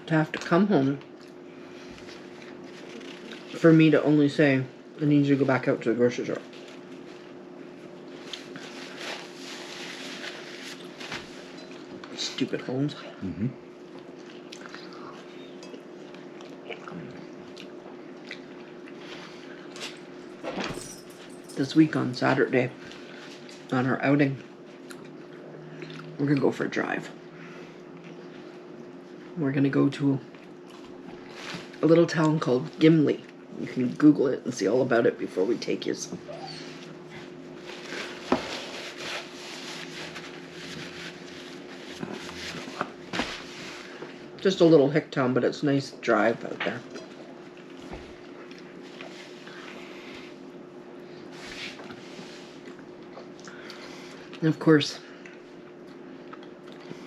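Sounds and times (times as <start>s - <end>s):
steady low hum: 0.0s - 57.0s
person chewing food: 13.8s - 20.0s, 24.8s - 26.2s, 55.2s - 57.0s.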